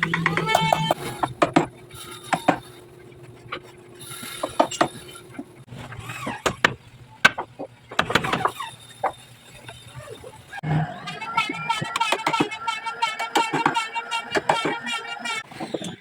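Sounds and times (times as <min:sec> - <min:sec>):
hand tools knocking on wood: 0:00.0 - 0:02.6.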